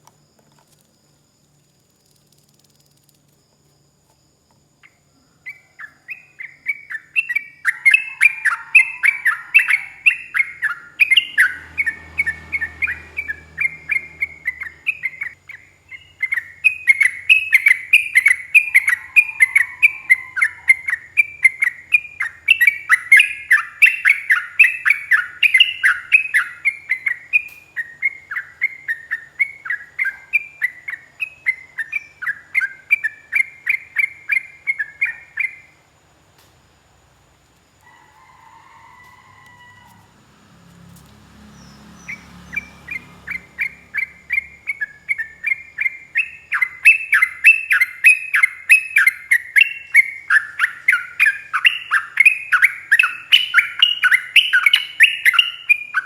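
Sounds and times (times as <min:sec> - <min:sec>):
bird singing rolling chirps: 0:00.0 - 0:56.0.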